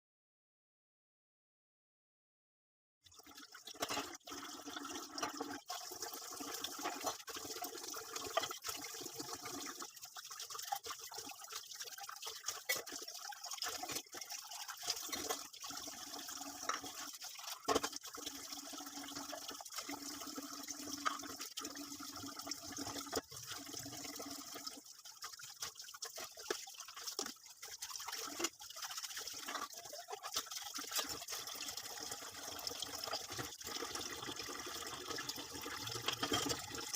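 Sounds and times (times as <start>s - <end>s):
water running from a tap: 3.1s - 36.9s.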